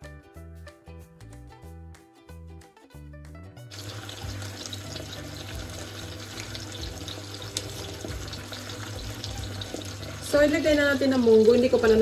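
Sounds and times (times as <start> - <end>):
background music: 0.0 - 12.0
water running from tap: 3.7 - 12.0.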